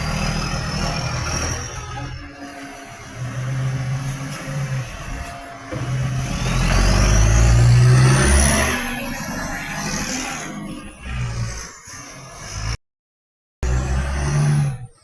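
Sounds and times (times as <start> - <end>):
garbage truck engine revving: 0.0 - 10.8.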